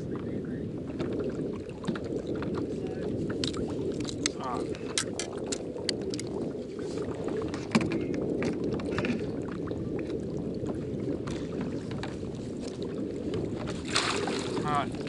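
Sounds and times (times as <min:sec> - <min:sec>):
low rumble of water and wind: 0:00.0 - 0:15.0
water sloshing against kayak: 0:00.0 - 0:15.0
small clicks and splashes: 0:01.0 - 0:06.4, 0:07.4 - 0:10.2, 0:11.2 - 0:15.0.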